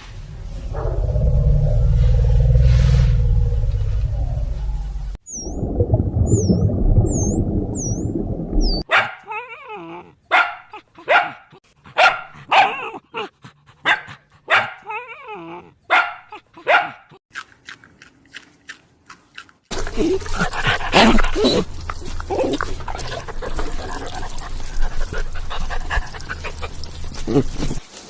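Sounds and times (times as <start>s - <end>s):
burst of noise: 0.0s - 5.1s
low rumble: 0.0s - 8.8s
dog yipping: 8.7s - 11.4s, 12.0s - 13.3s, 13.9s - 17.1s
dog barking: 8.9s - 9.4s, 10.3s - 13.0s, 13.8s - 14.9s, 15.9s - 17.2s.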